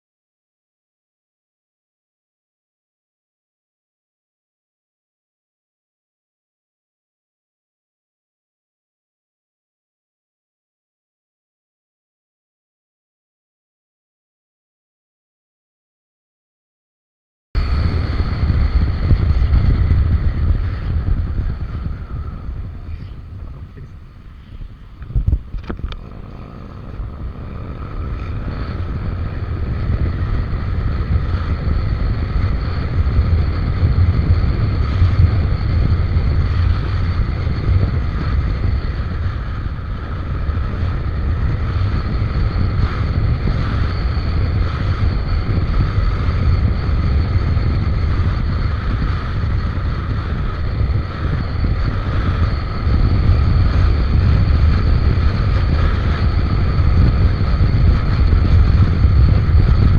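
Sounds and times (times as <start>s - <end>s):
scooter engine running: 17.6s - 32.4s
road noise: 17.6s - 33.7s
wind buffeting microphone: 17.6s - 59.9s.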